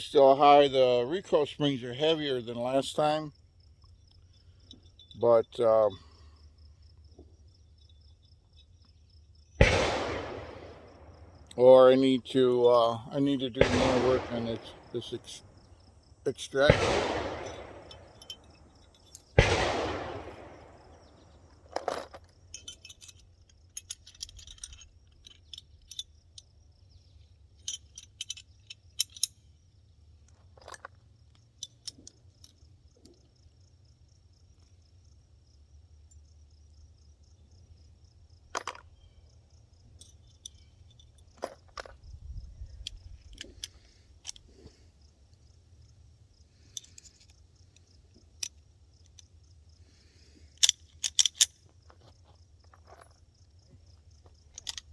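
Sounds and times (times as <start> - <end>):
metallic clicks and clinks: 3.8 - 6.2, 12.2 - 19.5, 20.3 - 29.6, 30.2 - 33.4, 39.8 - 45.6, 46.6 - 54.9
pistol shot: 9.6 - 11.1, 13.6 - 15.0, 16.6 - 18.2, 19.4 - 21.0.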